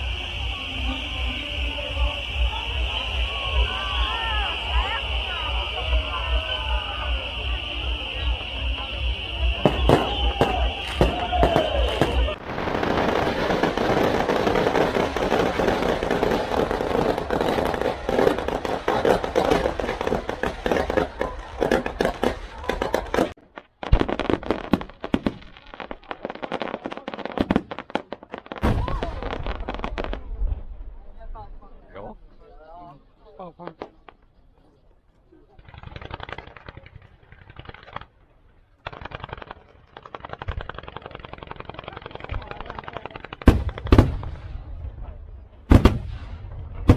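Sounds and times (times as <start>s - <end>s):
firework whistle: 0.0s - 23.3s
firework bangs: 0.0s - 30.7s, 35.6s - 46.9s
firework crackling: 0.0s - 31.2s, 35.4s - 46.9s.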